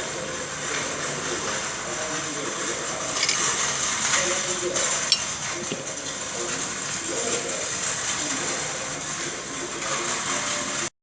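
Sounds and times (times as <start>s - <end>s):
sharp tool click: 3.2s - 3.5s.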